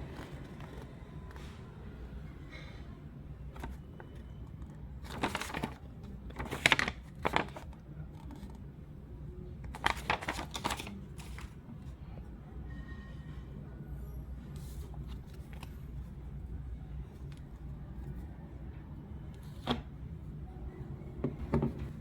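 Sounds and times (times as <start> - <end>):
crinkly plastic packaging: 5.0 - 8.6, 9.7 - 11.5.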